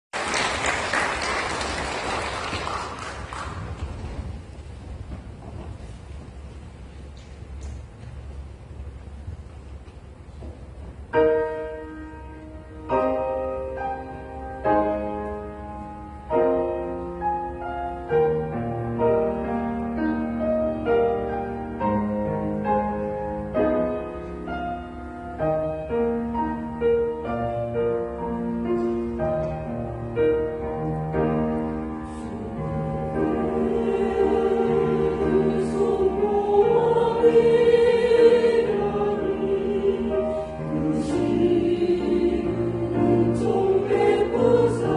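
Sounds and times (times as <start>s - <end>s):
piano chords: 0.2s - 44.9s
choir singing: 32.2s - 44.9s.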